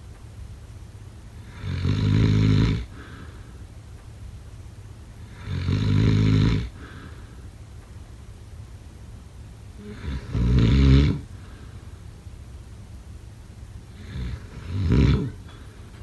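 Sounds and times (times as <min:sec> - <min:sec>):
person snoring: 0:09.8 - 0:11.3, 0:13.9 - 0:15.6.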